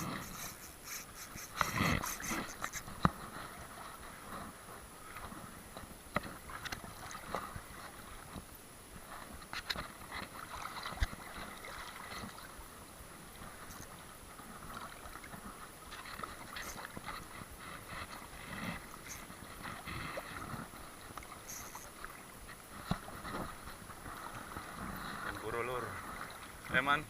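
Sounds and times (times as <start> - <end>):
water sloshing and lapping: 0.0 - 27.0.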